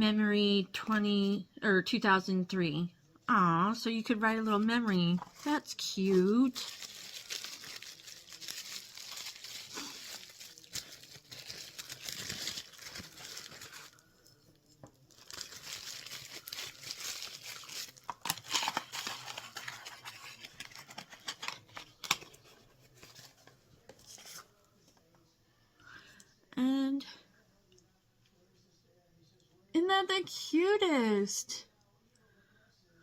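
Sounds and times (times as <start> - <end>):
paper packaging crinkling: 4.5 - 24.6.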